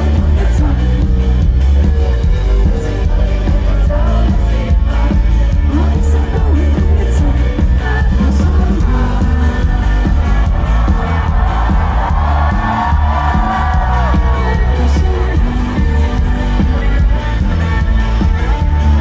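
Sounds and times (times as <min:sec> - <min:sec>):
person singing: 0:00.0 - 0:19.0
pop band playing: 0:00.0 - 0:19.0
crowd cheering: 0:08.6 - 0:19.0.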